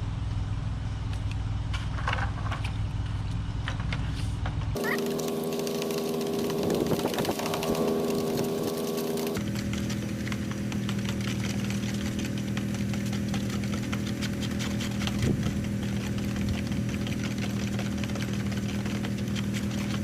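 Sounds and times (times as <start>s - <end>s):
gas engine idling: 4.8s - 20.0s.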